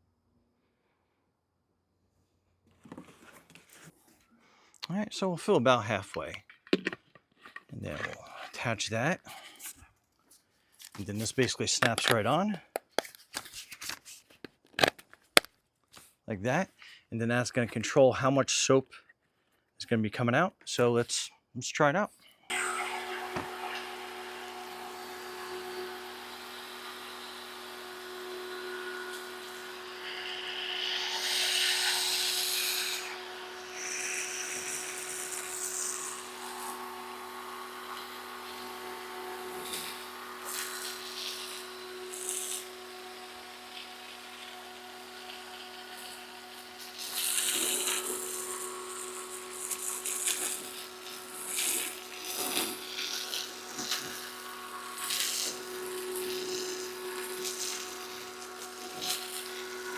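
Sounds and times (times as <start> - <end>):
pressure washer motor hum: 22.5 - 59.9.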